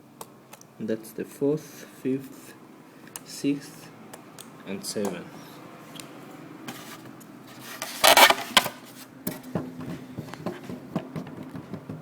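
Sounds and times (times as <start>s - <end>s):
loud scrape: 7.6s - 9.0s.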